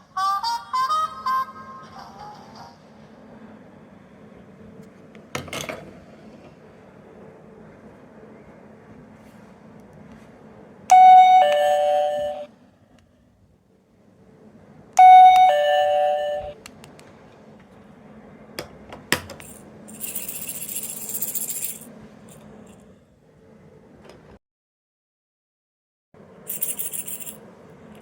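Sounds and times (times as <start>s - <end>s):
toy doorbell ding-dong chime: 10.9s - 12.5s, 15.0s - 16.6s.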